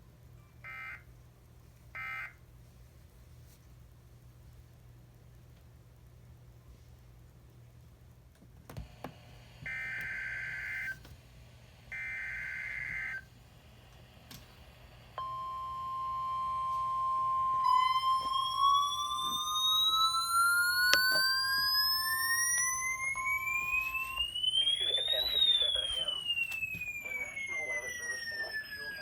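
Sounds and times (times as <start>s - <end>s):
steady attention tone: 11.6s - 29.0s
tone climbing in pitch: 15.2s - 29.0s
screechy digital data tones: 17.6s - 29.0s.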